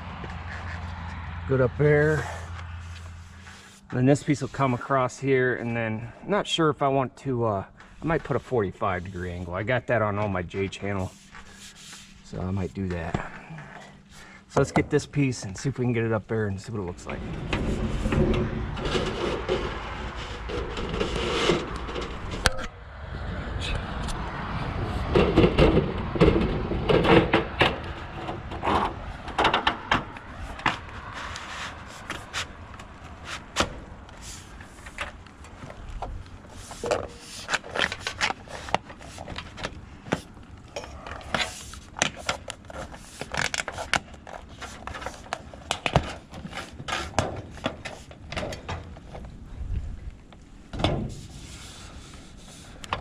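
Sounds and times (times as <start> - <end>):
metal trim knocking and scraping: 16.9 - 22.7, 24.8 - 49.3.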